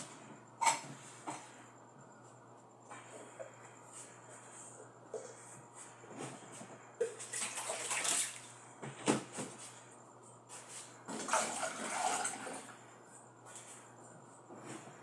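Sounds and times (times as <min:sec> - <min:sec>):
liquid pouring into container: 0:11.2 - 0:12.7.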